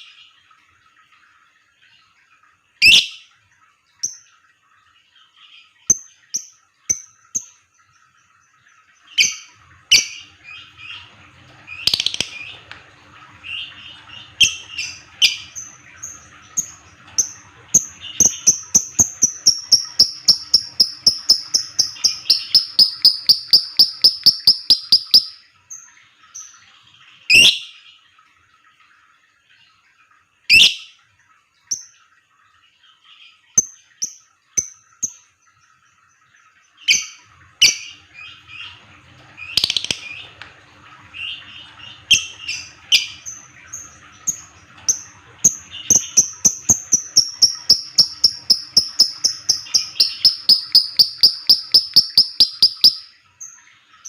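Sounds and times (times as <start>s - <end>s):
lovebird ticking chirps: 11.9s - 12.4s, 17.2s - 25.4s, 39.6s - 40.2s, 45.9s - 53.1s.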